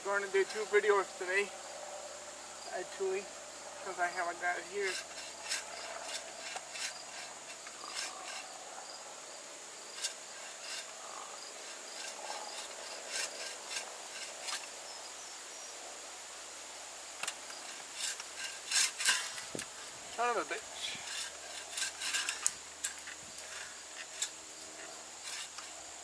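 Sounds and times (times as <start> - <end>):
high insect drone: 0.0 - 26.0
bow saw cutting wood: 4.7 - 8.6, 9.9 - 14.7, 17.2 - 25.8.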